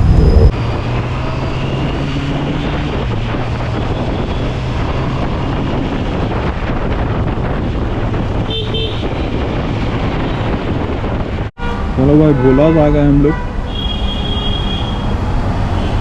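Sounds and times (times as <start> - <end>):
wind buffeting microphone: 0.0 - 11.6.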